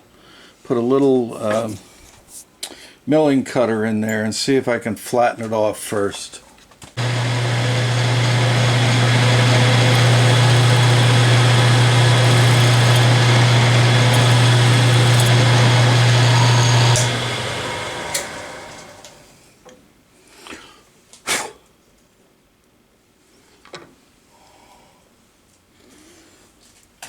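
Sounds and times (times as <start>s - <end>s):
milling cutter cutting screw: 7.0s - 19.2s
spindle motor humming: 7.0s - 19.3s.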